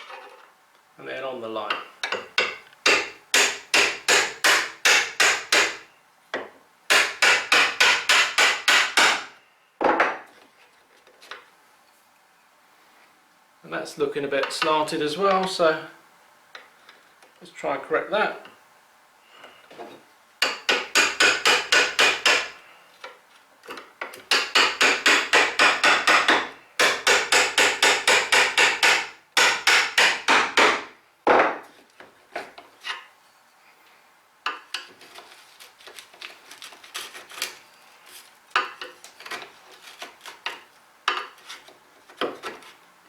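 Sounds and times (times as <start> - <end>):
hammer striking chisel into wood: 2.1 - 5.8, 6.4 - 9.3, 20.4 - 22.6, 24.3 - 31.6
chisel scraping wood: 34.5 - 42.8.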